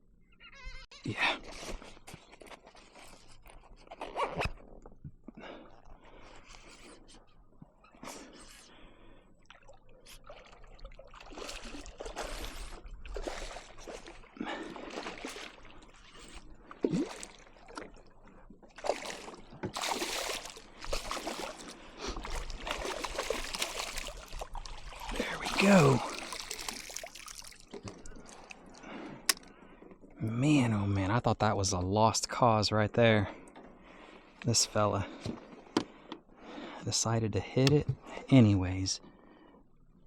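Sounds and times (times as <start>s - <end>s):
water splashing around a kayak: 5.4s - 30.2s.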